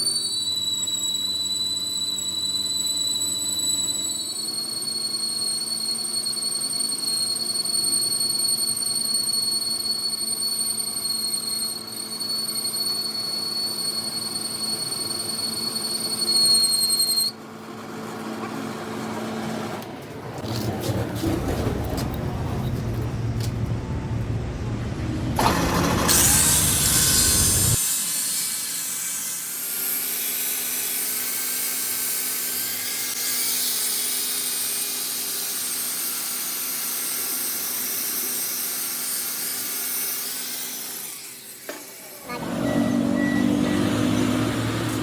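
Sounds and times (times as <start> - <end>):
machine whining: 19.8 - 45.0.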